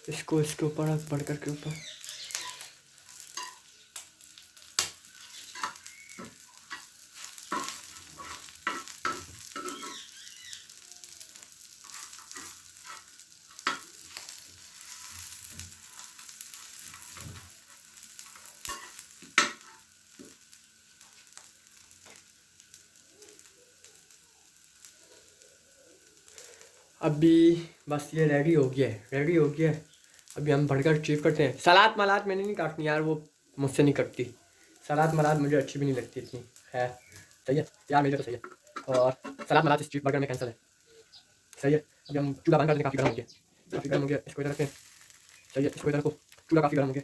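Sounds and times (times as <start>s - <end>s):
food sizzling in a pan: 0.0s - 47.0s
utensil scraping and clicking on pan: 5.2s - 10.1s.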